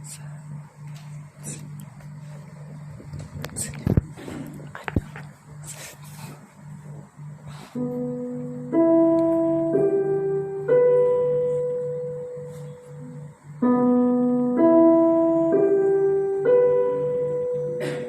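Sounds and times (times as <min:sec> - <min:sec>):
piano single held notes: 0:07.5 - 0:18.0.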